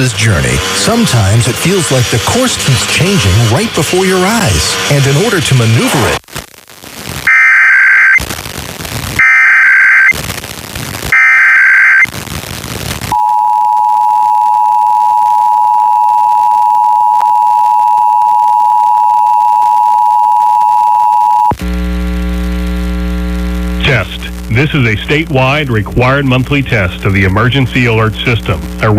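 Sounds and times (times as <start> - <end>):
digital data bursts: 7.0 - 13.2
two-tone attention signal: 7.3 - 8.2
steady buzzing hum: 21.5 - 28.9.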